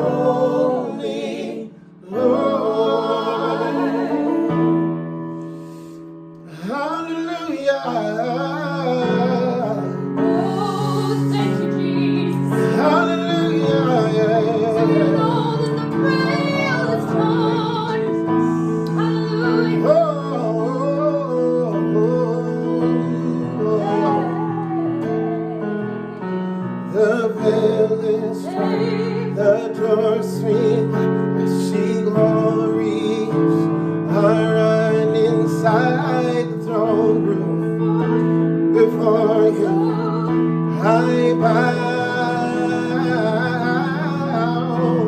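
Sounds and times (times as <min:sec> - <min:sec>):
held keyboard chords: 0:08.7 - 0:45.0
woman singing: 0:10.2 - 0:13.9, 0:14.5 - 0:20.8, 0:22.5 - 0:25.9, 0:28.0 - 0:29.6, 0:38.8 - 0:41.8.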